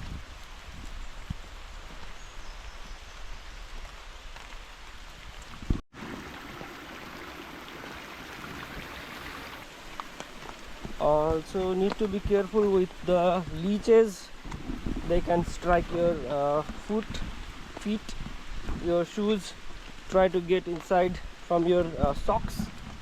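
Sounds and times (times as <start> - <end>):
flowing water: 3.8 - 11.0.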